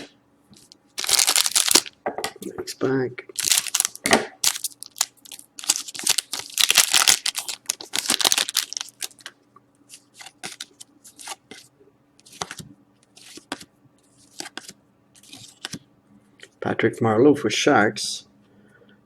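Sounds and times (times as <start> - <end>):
wrapper tearing: 1.0 - 1.9, 3.4 - 9.3.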